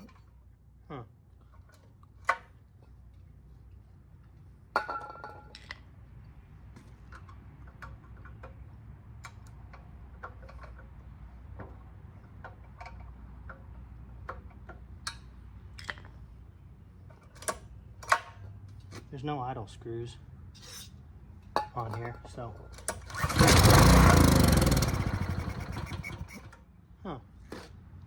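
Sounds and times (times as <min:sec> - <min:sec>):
small metal clicks and taps: 0:07.1 - 0:16.2.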